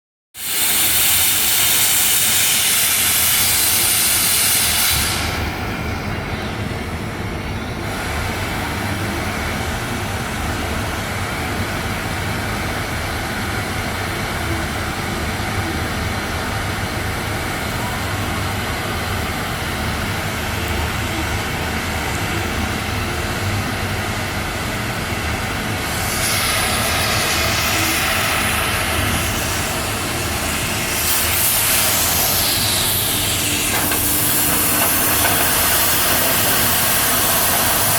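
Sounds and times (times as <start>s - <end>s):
cutting torch gas jet hissing: 0.4s - 6.7s, 25.1s - 37.9s.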